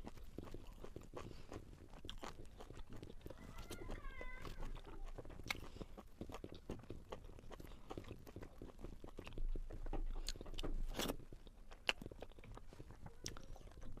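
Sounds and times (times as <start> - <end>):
chewing crunchy food: 0.0 - 14.0.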